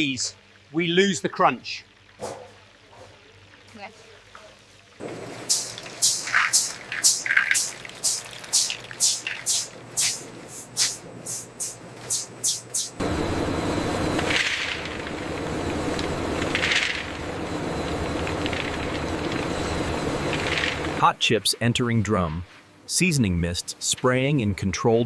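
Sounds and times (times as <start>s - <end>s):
production-line machinery humming: 5.0s - 21.4s.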